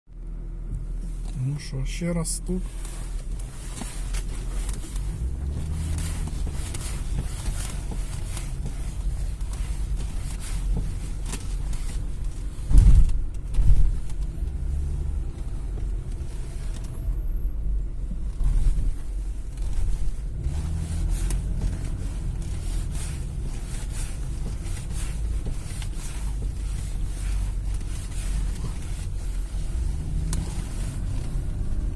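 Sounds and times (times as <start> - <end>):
car engine idling: 0.1 - 31.9.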